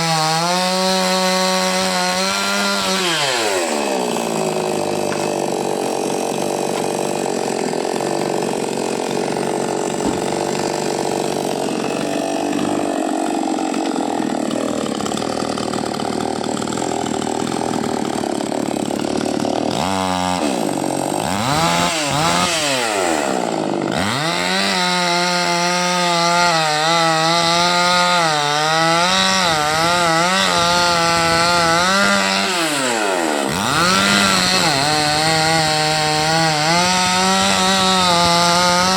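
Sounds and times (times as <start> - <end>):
chainsaw engine revving: 0.0 - 38.9.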